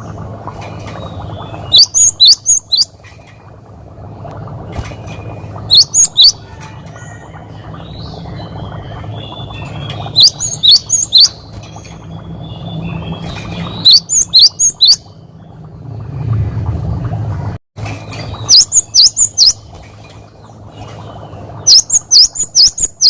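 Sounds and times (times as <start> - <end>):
soft bird twittering: 0.8 - 3.0, 5.0 - 15.6, 18.0 - 23.0.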